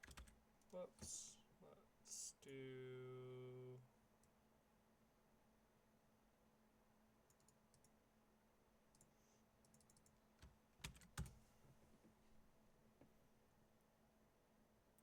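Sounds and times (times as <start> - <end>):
typing on computer keyboard: 0.0 - 0.4, 9.7 - 11.4.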